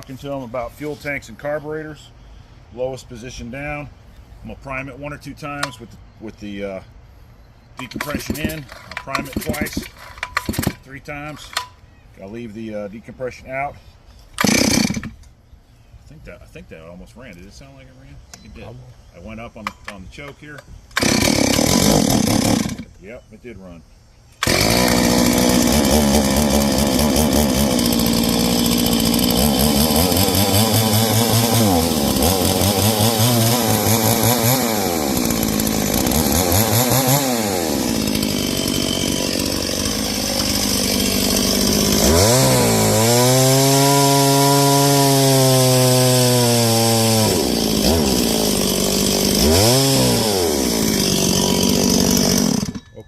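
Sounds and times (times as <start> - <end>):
chainsaw revving: 7.8 - 10.8, 14.4 - 15.2, 21.0 - 22.9, 24.4 - 53.0.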